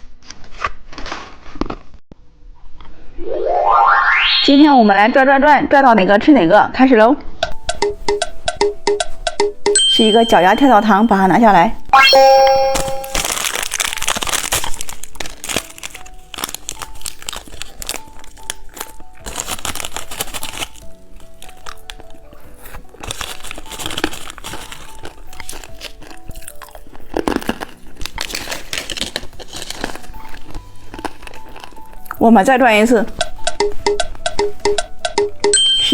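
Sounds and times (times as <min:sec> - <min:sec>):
soft background music: 0:04.4 - 0:35.9
plastic candy wrapper crinkling: 0:12.8 - 0:35.0.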